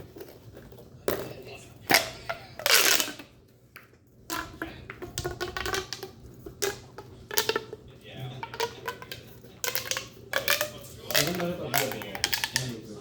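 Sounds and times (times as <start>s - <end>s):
plastic pop tubes crackling: 0.0s - 13.0s.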